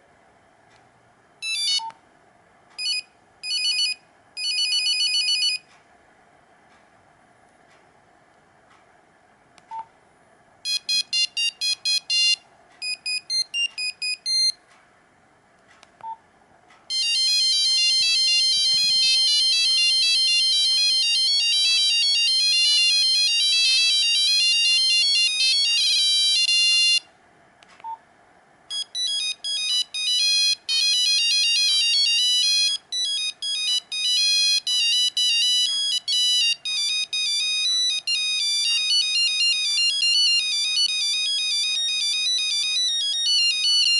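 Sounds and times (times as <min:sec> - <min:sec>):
monophonic phone ringtones: 0:01.4 - 0:01.9, 0:02.8 - 0:05.6, 0:10.7 - 0:14.6, 0:16.9 - 0:27.1, 0:28.7 - 0:43.9.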